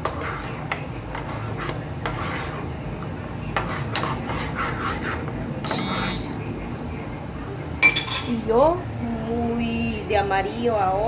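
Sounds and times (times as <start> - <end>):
utensil scraping and tapping a pan: 0.0 - 2.6, 3.5 - 6.4.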